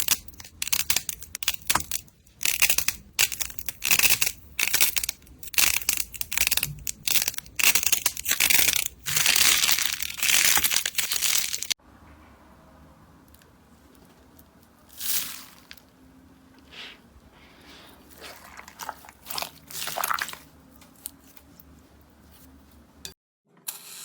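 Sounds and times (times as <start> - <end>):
crunchy slime squeezed: 3.7 - 11.8, 18.1 - 20.4.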